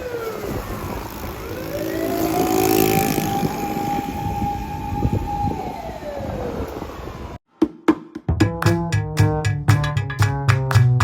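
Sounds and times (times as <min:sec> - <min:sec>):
fire vehicle siren wailing: 0:00.0 - 0:07.4.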